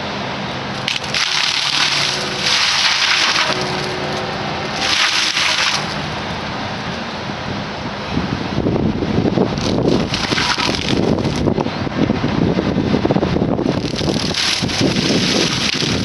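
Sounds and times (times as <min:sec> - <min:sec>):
excavator engine running: 0:00.0 - 0:16.0
mower head grinding through brush: 0:00.8 - 0:06.2.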